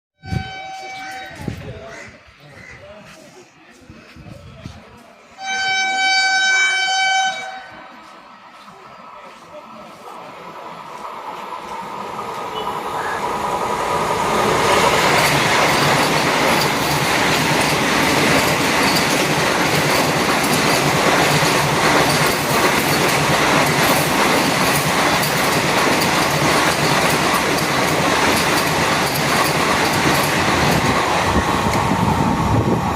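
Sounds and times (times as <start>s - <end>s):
electric train passing at speed: 4.1s - 32.9s
wheels clattering over rail joints: 14.8s - 31.0s.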